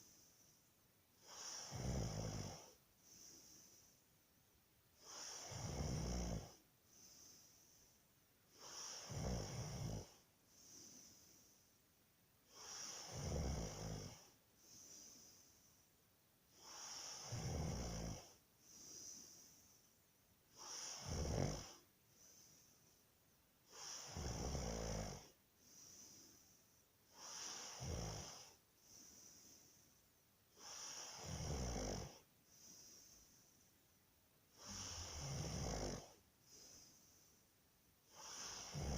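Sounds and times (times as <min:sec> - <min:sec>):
man snoring: 0:01.2 - 0:03.8, 0:05.0 - 0:07.8, 0:08.6 - 0:11.6, 0:12.5 - 0:15.5, 0:16.5 - 0:19.7, 0:20.5 - 0:22.5, 0:23.7 - 0:26.4, 0:27.1 - 0:29.8, 0:30.5 - 0:33.3, 0:34.5 - 0:37.2, 0:38.1 - 0:38.9.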